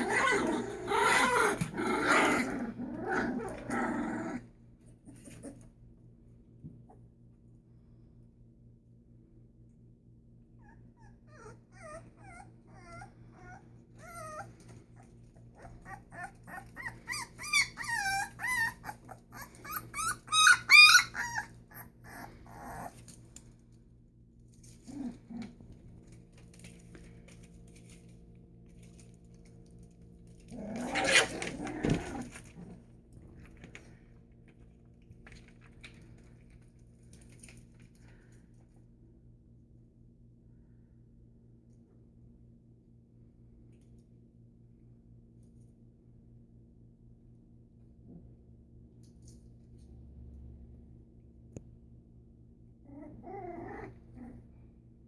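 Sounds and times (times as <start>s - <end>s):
puppies whimpering and yelping: 10.6s - 23.0s.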